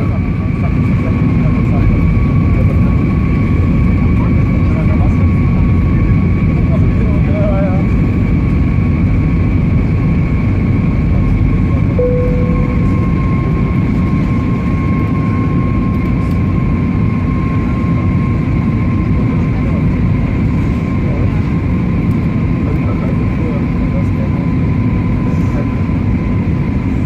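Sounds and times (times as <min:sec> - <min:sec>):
low rumble of engines and airflow: 0:00.0 - 0:27.0
short higher tone: 0:12.0 - 0:14.2
thin steady whine: 0:12.0 - 0:15.9.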